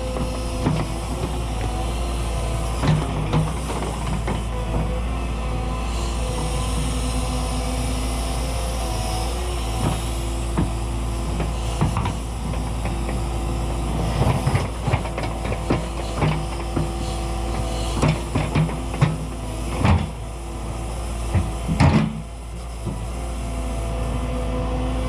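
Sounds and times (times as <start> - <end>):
excavator diesel engine running: 0.0 - 25.0.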